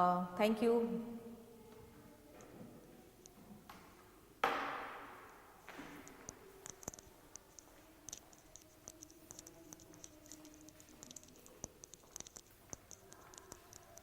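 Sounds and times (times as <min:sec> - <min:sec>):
faint high-pitched clicks: 0:06.0 - 0:14.0.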